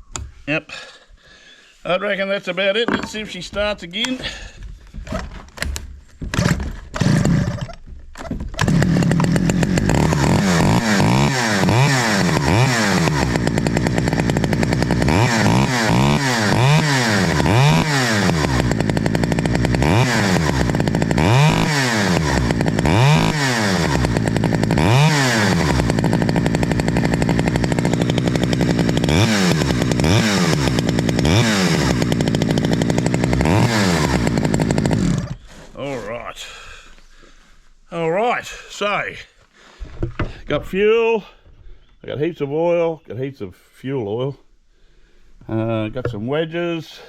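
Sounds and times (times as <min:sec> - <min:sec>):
chainsaw revving: 0:06.3 - 0:07.8, 0:08.5 - 0:35.6.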